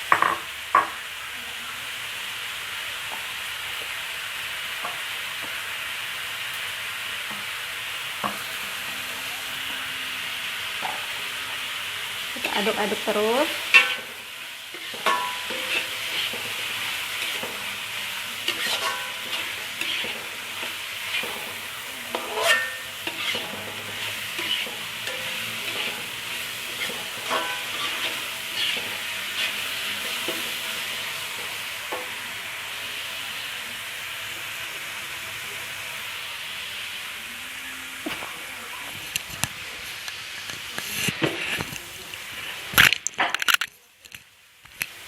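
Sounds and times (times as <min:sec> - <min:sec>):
food sizzling in hot oil: 0:00.0 - 0:45.0
utensil scraping a pan: 0:12.3 - 0:32.1.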